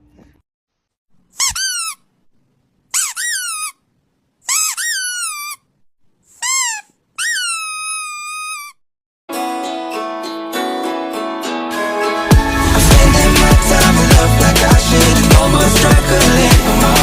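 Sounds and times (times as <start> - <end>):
guitar music: 9.3 - 17.0.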